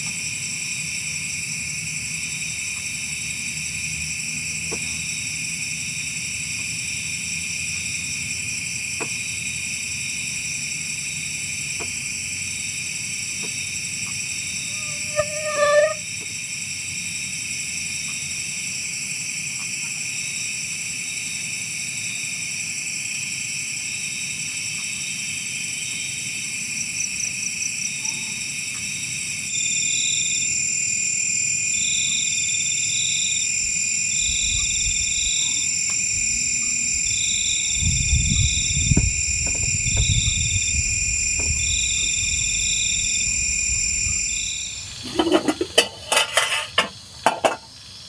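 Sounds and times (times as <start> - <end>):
insects shrilling: 13.8 - 16.2, 29.5 - 45.3.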